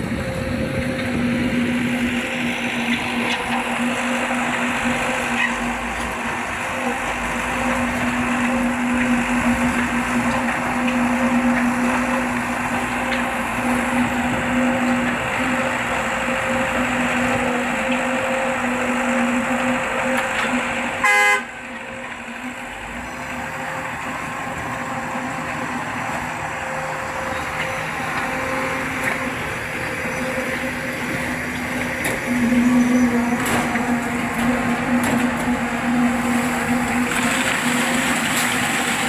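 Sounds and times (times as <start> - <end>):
truck pump running: 0.0 - 39.0
loud horn toot: 21.0 - 21.6.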